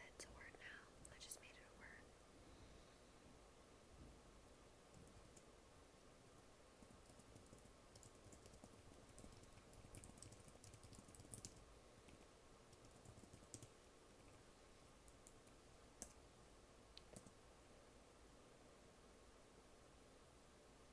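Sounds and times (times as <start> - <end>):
soft keyboard typing: 4.9 - 5.5, 6.2 - 16.3, 17.0 - 17.4.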